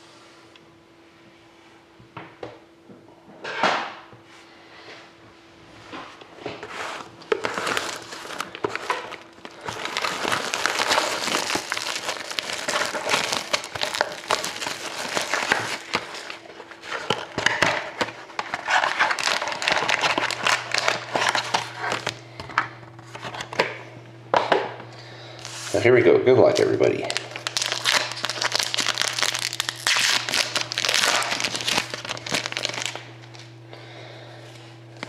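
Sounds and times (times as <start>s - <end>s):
wrapping crinkling and tearing: 6.6s - 22.2s, 26.4s - 33.5s.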